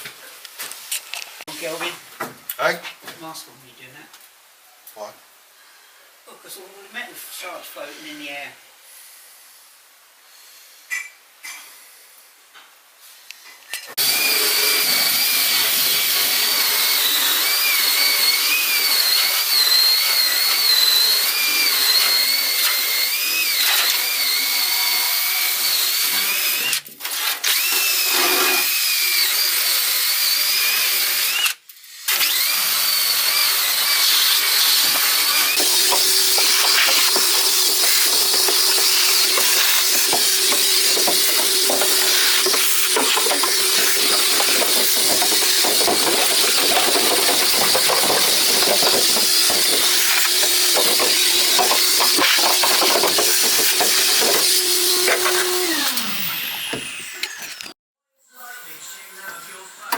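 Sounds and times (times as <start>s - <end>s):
angle grinder grinding steel: 14.0s - 26.7s, 27.5s - 31.4s, 32.2s - 57.8s.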